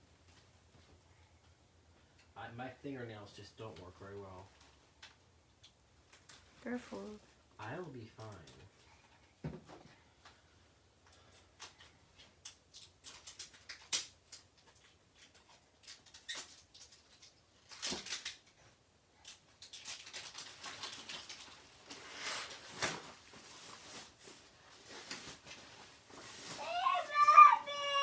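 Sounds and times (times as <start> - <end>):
gift wrapping tearing and crinkling: 12.4 - 18.6, 19.2 - 28.0.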